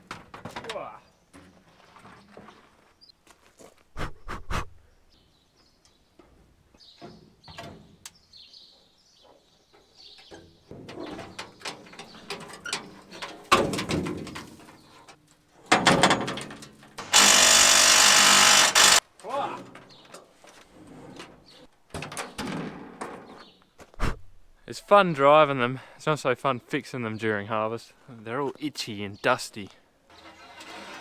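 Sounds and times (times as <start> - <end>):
birds chirping: 4.8 - 13.2
tools and metal parts clattering: 9.8 - 19.0, 19.6 - 23.6.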